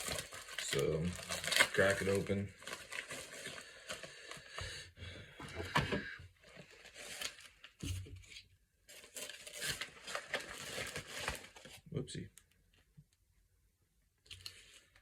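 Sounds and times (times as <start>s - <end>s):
package tearing and crinkling: 0.0s - 4.0s, 8.9s - 11.8s.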